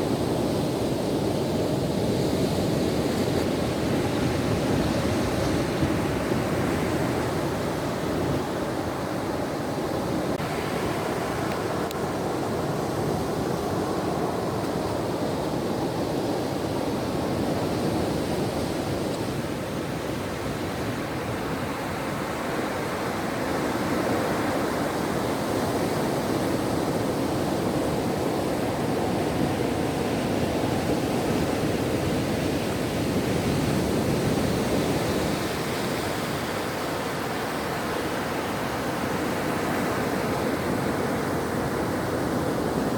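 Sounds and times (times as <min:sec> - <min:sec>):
ocean surf washing on shore: 0:00.0 - 0:42.9.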